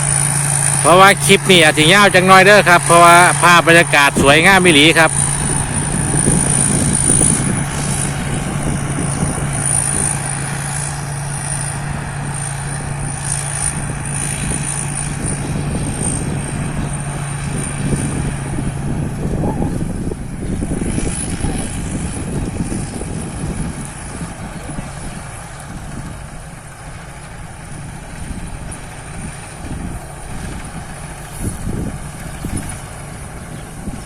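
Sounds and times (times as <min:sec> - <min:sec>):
combine harvester engine hum: 0:00.0 - 0:34.0
high whine: 0:00.0 - 0:34.0.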